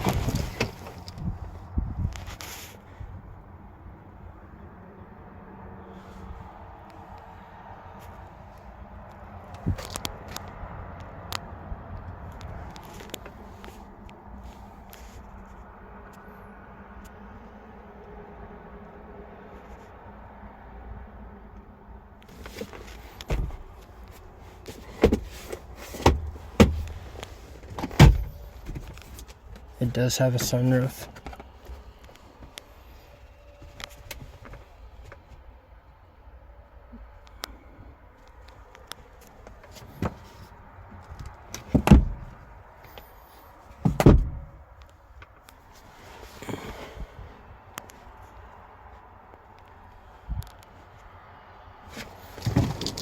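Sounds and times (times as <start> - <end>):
thumps on car doors and body: 22.4 - 23.8, 24.7 - 27.0, 27.6 - 29.3, 41.2 - 42.4, 43.8 - 44.6, 52.0 - 53.0.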